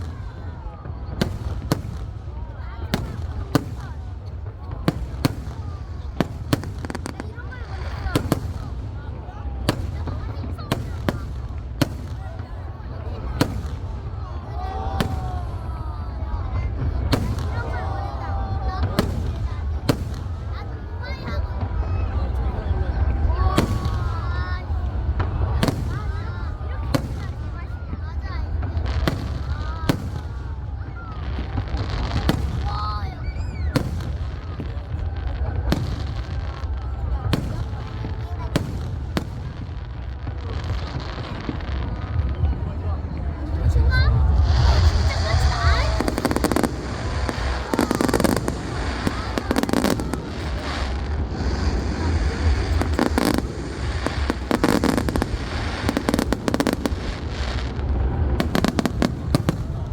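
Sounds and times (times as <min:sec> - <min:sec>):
crowd voices: 0:00.0 - 0:59.9
fireworks bangs: 0:00.0 - 0:59.9.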